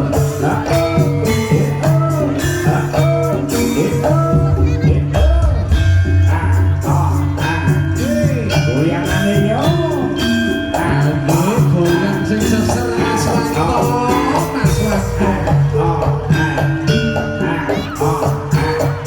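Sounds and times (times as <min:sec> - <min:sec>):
gamelan percussion: 0:00.0 - 0:19.0
ornamented melody line: 0:00.0 - 0:19.0
person singing: 0:00.0 - 0:19.0
held low notes: 0:03.0 - 0:09.6, 0:12.9 - 0:19.0.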